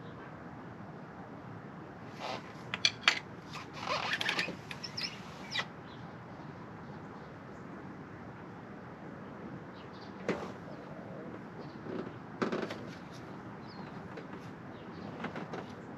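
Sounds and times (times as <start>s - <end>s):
faint background hum: 0.0s - 15.9s
metal hand tools clinking: 2.8s - 3.2s.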